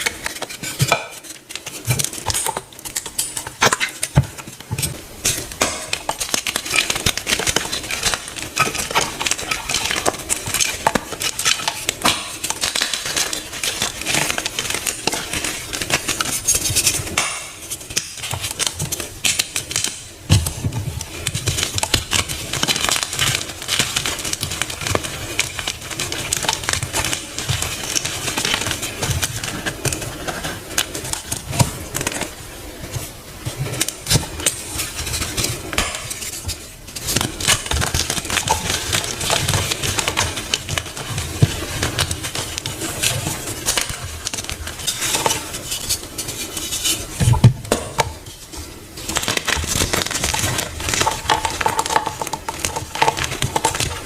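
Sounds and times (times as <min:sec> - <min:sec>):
crunchy blocks being crushed: 0:00.0 - 0:32.4, 0:49.0 - 0:54.0.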